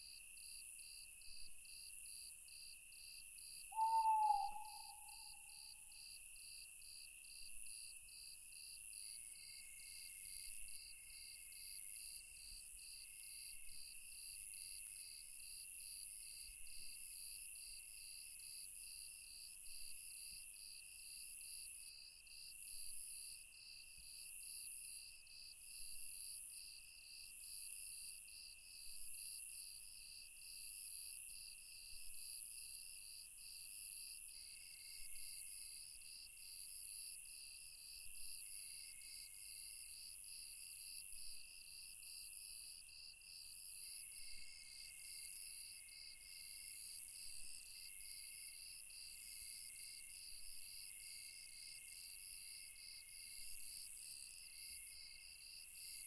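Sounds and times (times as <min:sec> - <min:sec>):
fast pulsing insect chirp: 0:03.8 - 0:05.4.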